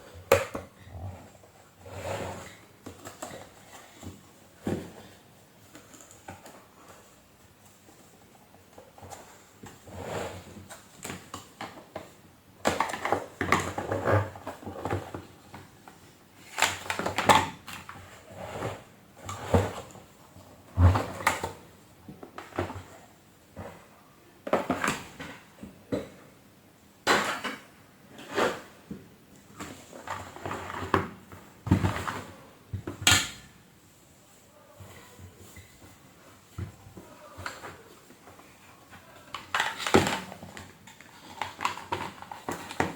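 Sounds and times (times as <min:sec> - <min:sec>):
plastic parts clicking and rattling: 0:38.9 - 0:42.9.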